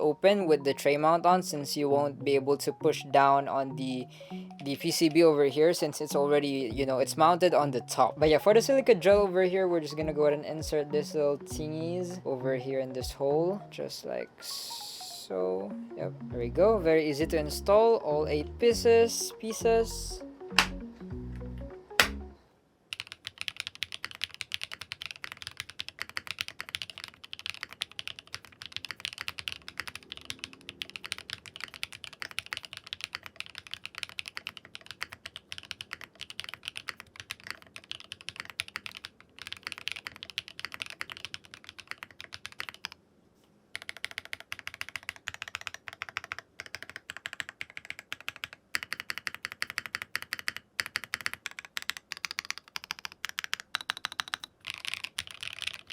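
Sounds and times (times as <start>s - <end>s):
rapid mechanical keyboard typing: 22.9s - 43.0s, 43.7s - 55.9s.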